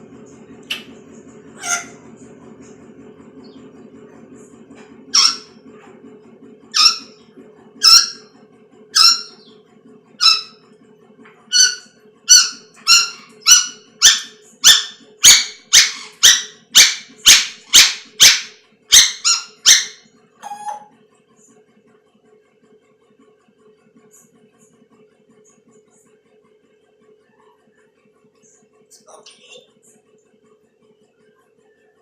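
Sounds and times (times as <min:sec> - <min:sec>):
pet animal short high calls: 0:01.6 - 0:02.0, 0:05.1 - 0:05.5.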